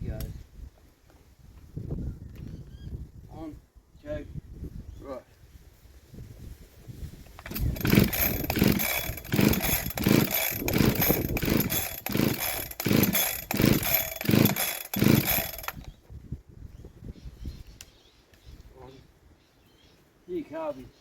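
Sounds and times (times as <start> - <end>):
chainsaw running unevenly: 7.4 - 15.9.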